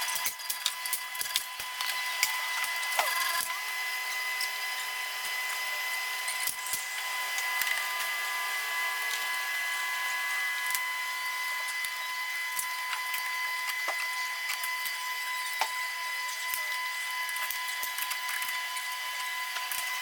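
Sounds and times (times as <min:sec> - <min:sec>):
tool clatter and clicks: 0:00.0 - 0:04.6, 0:11.6 - 0:20.0
high-pitched whine: 0:00.0 - 0:20.0.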